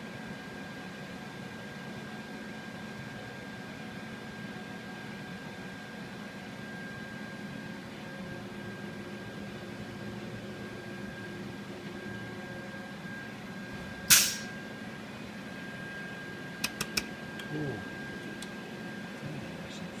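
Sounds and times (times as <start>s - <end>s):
machine hum: 6.0s - 20.0s
thin high whine: 6.9s - 16.6s
sharp clicks: 16.6s - 17.5s.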